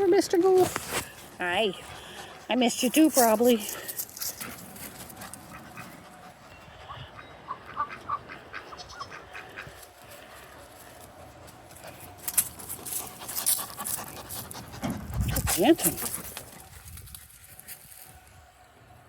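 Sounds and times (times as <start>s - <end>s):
farm animal calls: 5.2s - 10.6s.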